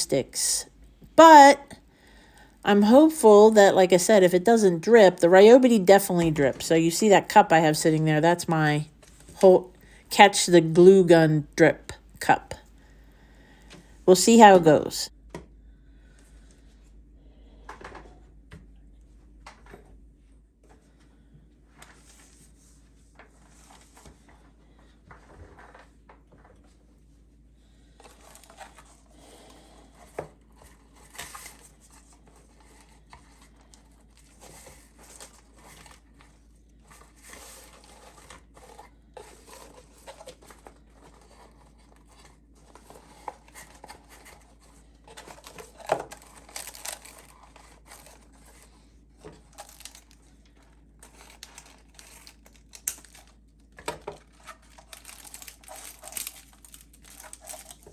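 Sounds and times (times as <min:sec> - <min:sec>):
plastic wrapping crinkling: 0:36.9 - 0:57.9.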